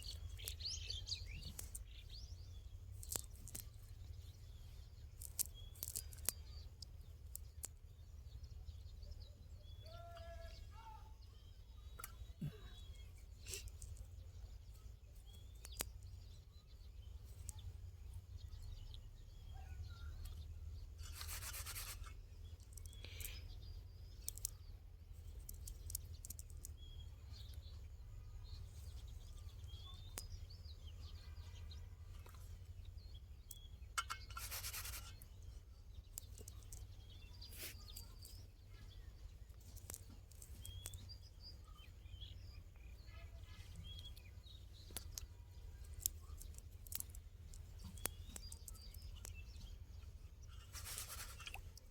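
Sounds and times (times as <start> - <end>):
rustling or scrubbing noise: 21.0 - 22.2, 34.1 - 35.3, 50.6 - 51.8.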